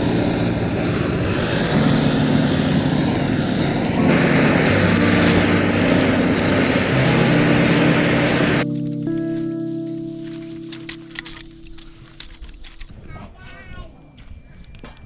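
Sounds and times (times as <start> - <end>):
motor humming: 0.0 - 8.7
rushing noise: 0.0 - 12.9.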